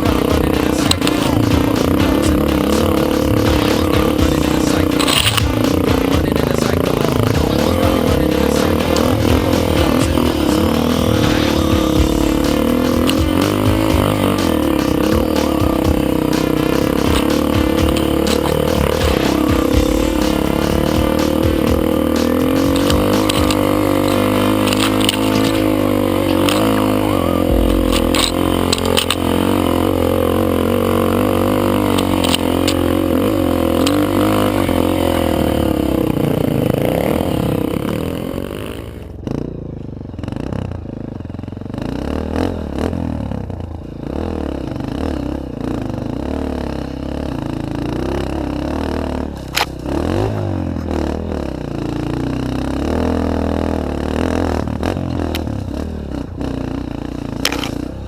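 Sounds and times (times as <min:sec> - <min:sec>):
motorcycle engines revving: 0:00.0 - 0:58.0.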